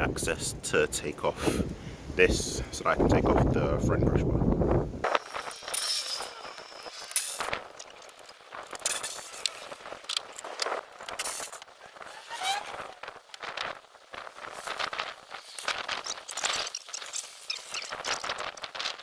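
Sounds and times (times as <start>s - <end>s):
brief squeak: 12.1s - 13.0s.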